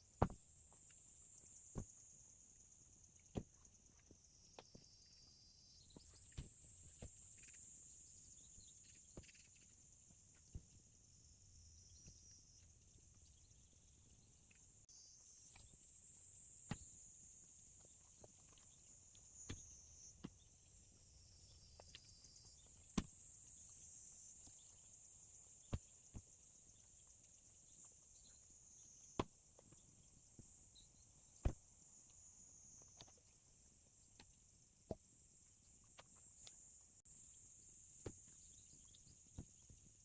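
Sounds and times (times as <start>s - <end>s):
insect chirring: 0.0s - 20.2s.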